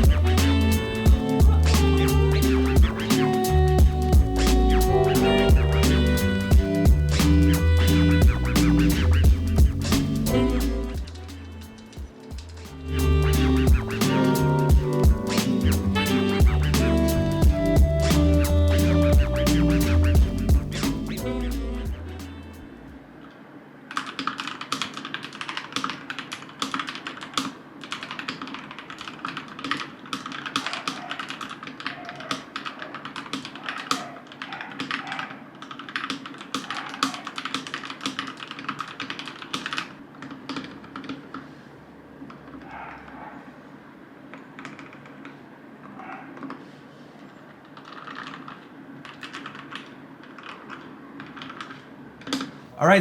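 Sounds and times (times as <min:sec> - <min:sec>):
mechanical keyboard typing: 0:23.9 - 0:41.4, 0:44.6 - 0:45.4, 0:47.7 - 0:52.5.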